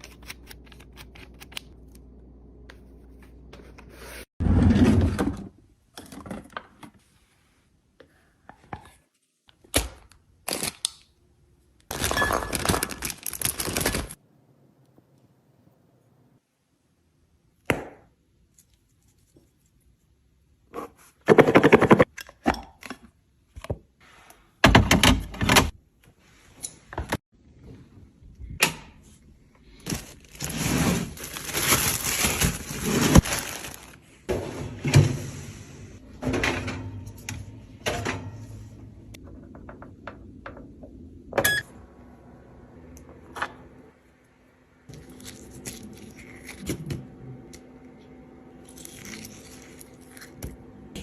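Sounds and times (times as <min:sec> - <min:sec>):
packaging scraping and rustling: 0:29.8 - 0:34.1.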